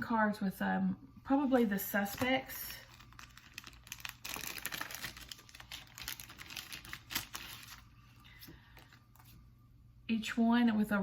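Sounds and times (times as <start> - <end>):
paper cards flipped through: 2.0 - 9.4.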